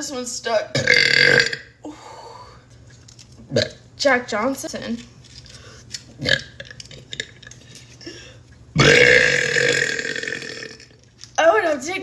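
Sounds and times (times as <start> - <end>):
woman burping loudly: 0.7 - 1.9, 6.2 - 7.6, 8.8 - 11.0.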